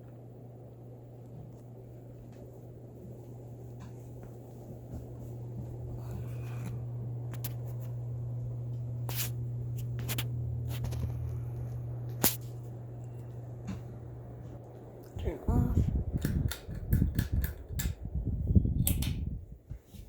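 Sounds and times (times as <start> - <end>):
ceiling fan motor hum: 0.0 - 20.0
sharp click: 18.8 - 19.2.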